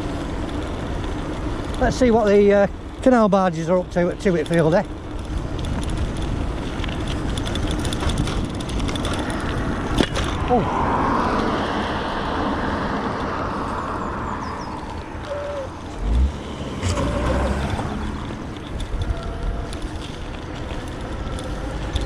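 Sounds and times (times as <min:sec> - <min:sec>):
road traffic passing: 0:00.0 - 0:22.0
wind rumbling on microphone: 0:04.4 - 0:22.0.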